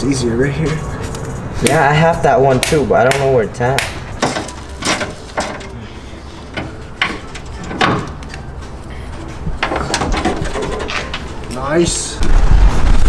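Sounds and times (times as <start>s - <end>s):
knocks and clicks of tools: 2.6s - 5.8s, 6.5s - 8.5s, 9.5s - 11.4s.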